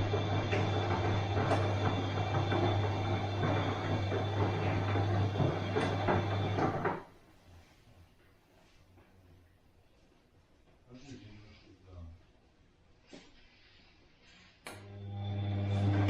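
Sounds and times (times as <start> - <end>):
washing machine running: 0.0 - 7.1, 14.8 - 16.0.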